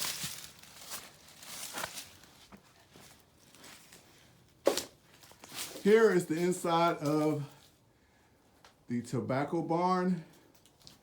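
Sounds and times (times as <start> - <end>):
faint footsteps: 0.0 - 7.8.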